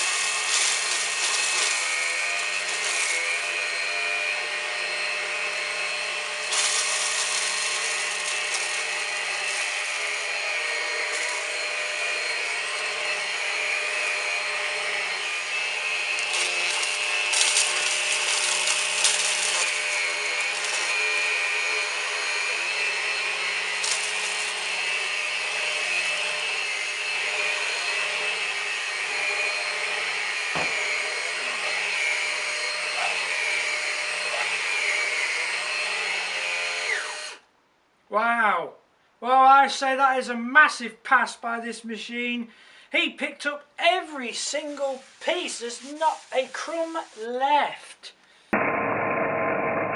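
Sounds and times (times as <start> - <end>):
cornflakes rattling up vacuum: 0.0 - 3.8, 6.2 - 11.9, 15.9 - 26.4, 44.4 - 47.4
vacuum cleaner motor whine: 0.0 - 37.4, 48.6 - 49.9.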